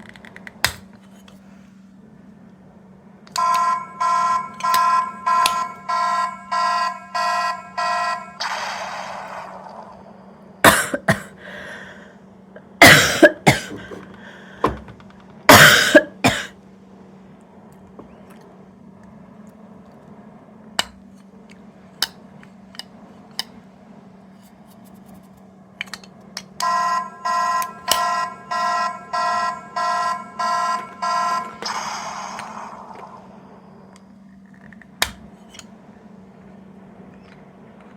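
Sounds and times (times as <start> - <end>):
electronic toy beeping: 3.4 - 9.8, 26.6 - 33.8.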